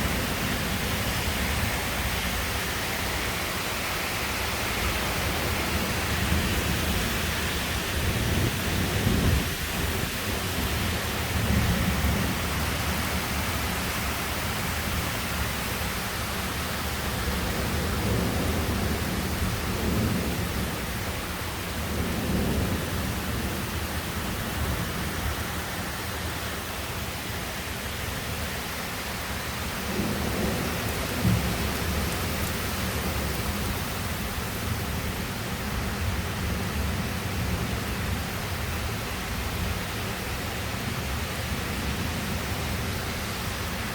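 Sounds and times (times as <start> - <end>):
heavy rain falling: 0.0 - 43.9
thunder rumbling: 5.1 - 14.1, 17.3 - 21.1, 29.8 - 35.1.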